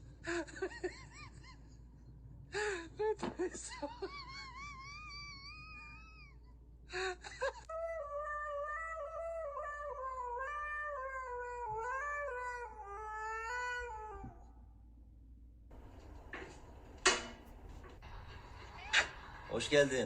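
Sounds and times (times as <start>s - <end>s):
cat yowling: 8.2s - 14.4s, 18.6s - 19.4s
cat meowing: 18.6s - 19.2s.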